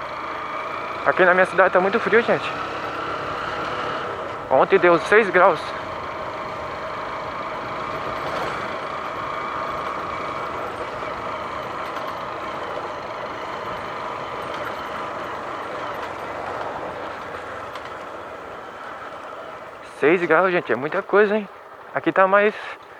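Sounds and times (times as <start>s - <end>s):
motorcycle engine running: 0.0s - 21.9s.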